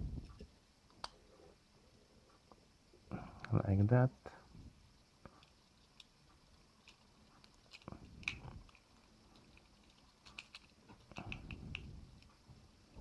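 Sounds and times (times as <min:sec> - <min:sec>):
plastic toy parts clicking: 0:05.3 - 0:06.2, 0:06.8 - 0:12.3.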